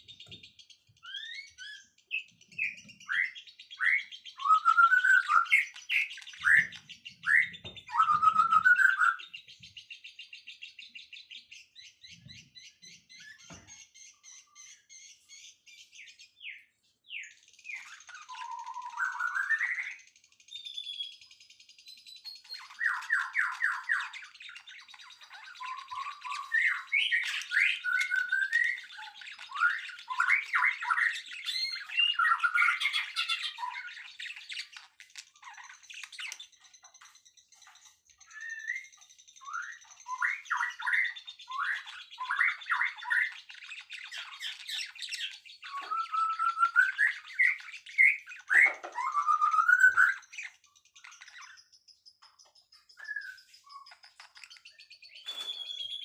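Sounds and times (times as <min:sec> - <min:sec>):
songbirds whistling: 0:00.0 - 0:56.0
high-pitched bird trill: 0:01.0 - 0:09.4, 0:20.6 - 0:56.0.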